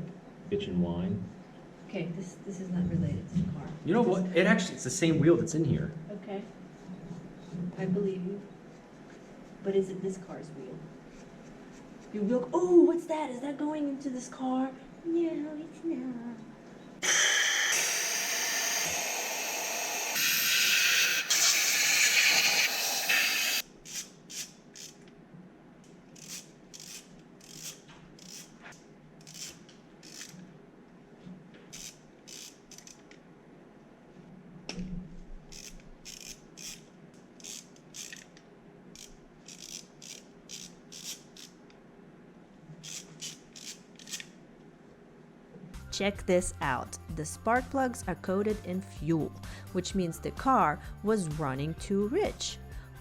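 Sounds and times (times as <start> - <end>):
loud spray hiss: 17.0 - 23.6
ratchet wrench clicking: 23.9 - 25.0, 26.2 - 28.5, 29.2 - 30.4, 31.7 - 33.0, 35.5 - 38.3, 39.0 - 41.6, 42.8 - 44.3.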